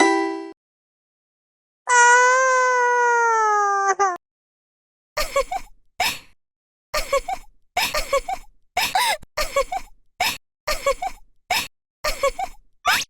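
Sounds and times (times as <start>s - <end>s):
cartoon voice groaning: 1.9s - 4.2s.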